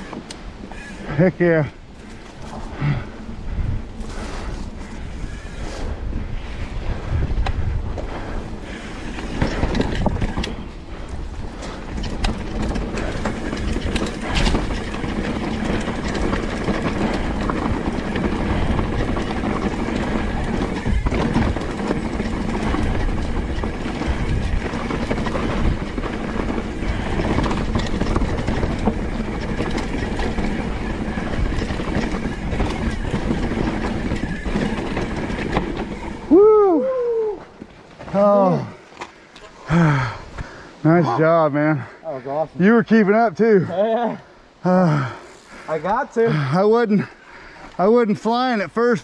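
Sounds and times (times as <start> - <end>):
wind rushing over microphone: 0.0 - 37.9
bike chain and frame rattling: 0.0 - 40.1, 44.8 - 47.1
bike tyres rolling on rough ground: 0.0 - 40.6.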